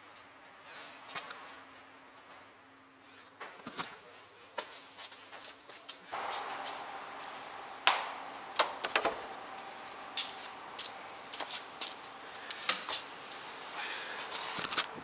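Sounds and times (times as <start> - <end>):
sharp knocks and clicks: 7.8 - 9.3.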